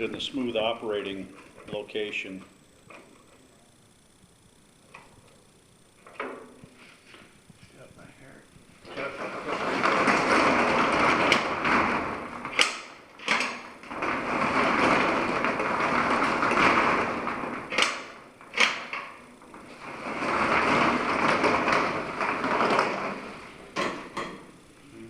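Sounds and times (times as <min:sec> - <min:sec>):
roll-up door rattling: 0:08.8 - 0:24.4.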